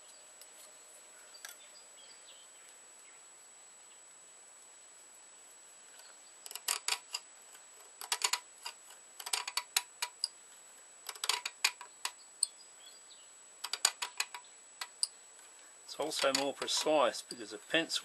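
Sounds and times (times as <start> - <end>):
hand tools clicking on metal: 6.4 - 7.2, 7.8 - 10.3, 11.0 - 12.5, 13.6 - 15.1, 16.0 - 17.0.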